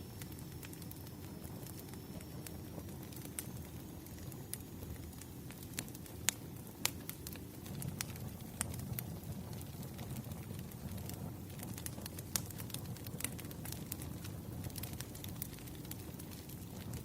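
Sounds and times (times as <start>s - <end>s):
fire crackles and pops: 0.0s - 17.0s
low rumble of flames: 0.0s - 17.0s.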